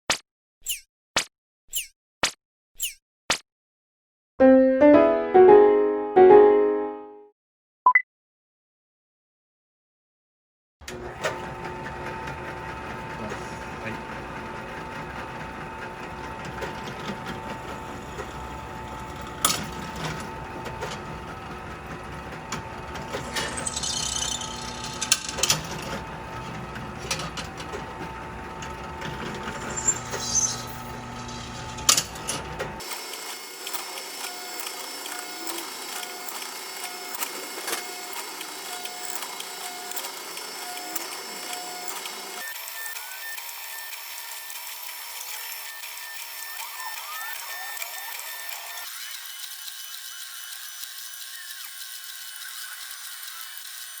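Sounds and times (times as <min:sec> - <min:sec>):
electric drill running: 0:23.0 - 0:26.0, 0:32.8 - 0:54.0.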